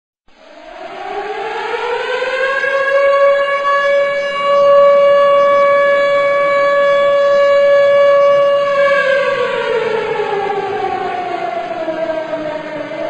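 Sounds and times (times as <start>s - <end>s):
wailing siren: 0.3s - 13.0s.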